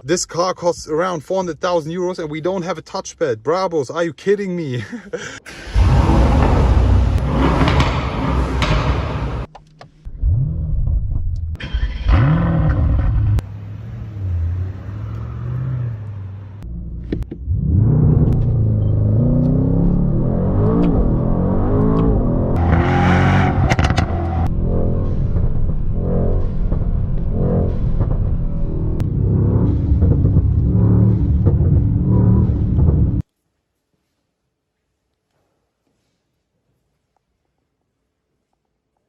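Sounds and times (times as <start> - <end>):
car engine revving: 5.5 - 9.5, 10.1 - 33.2.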